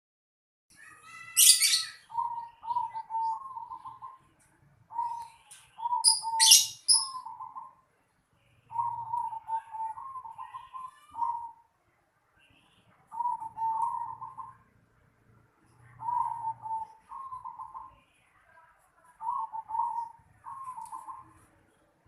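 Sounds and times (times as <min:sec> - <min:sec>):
small bird high chirps: 0:00.8 - 0:04.3, 0:04.9 - 0:07.8
dove cooing: 0:01.4 - 0:04.2, 0:04.9 - 0:07.8, 0:08.7 - 0:11.6, 0:13.1 - 0:14.7, 0:16.0 - 0:18.0, 0:19.2 - 0:21.4.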